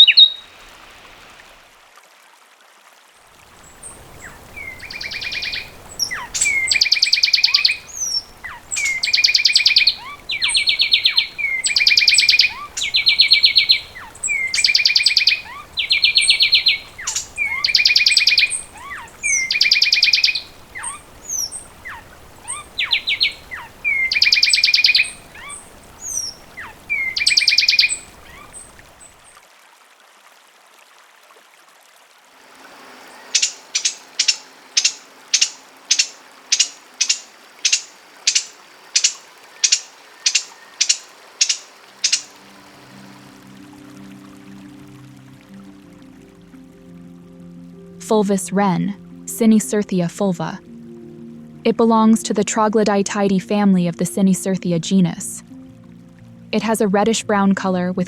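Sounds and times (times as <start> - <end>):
bird singing rapid trills: 0.0 - 0.5, 3.6 - 29.2, 33.0 - 43.2
sharp whistled bird notes: 0.0 - 0.5, 3.8 - 28.7, 33.2 - 42.4.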